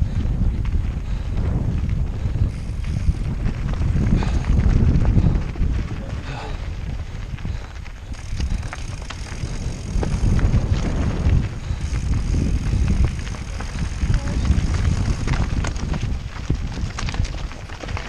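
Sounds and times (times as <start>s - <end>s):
bike clicks and rattles: 0.0s - 18.0s
tyres over loose terrain: 0.0s - 18.0s
wind rumble on microphone: 0.0s - 18.0s.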